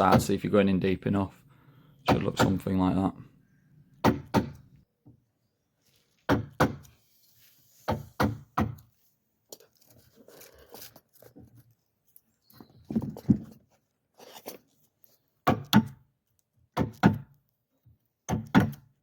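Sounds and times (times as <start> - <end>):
hammer striking chisel into wood: 4.0 - 4.6, 6.3 - 6.9, 7.9 - 8.8, 18.3 - 18.9.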